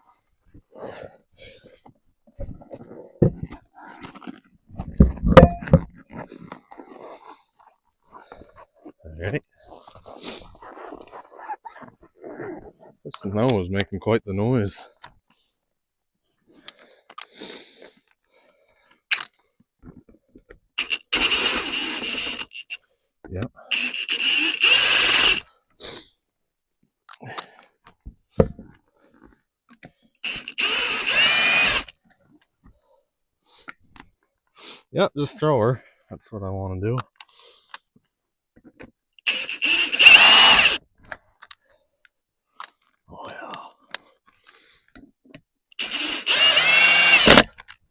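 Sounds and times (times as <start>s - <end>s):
impact wrench whining: 20.8s - 22.8s, 23.7s - 25.5s, 30.2s - 32.0s, 39.2s - 40.8s, 45.7s - 47.5s.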